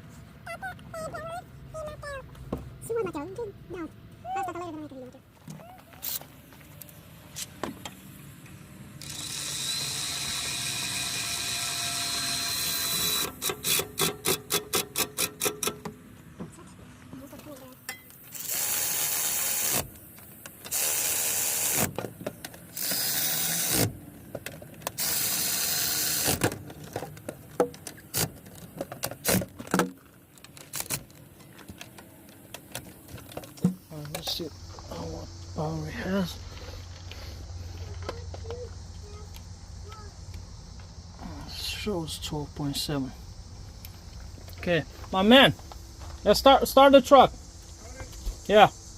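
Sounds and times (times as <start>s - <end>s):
power tool whining: 9.0s - 15.8s, 18.3s - 20.0s, 20.6s - 22.1s, 22.7s - 24.0s, 24.8s - 26.6s.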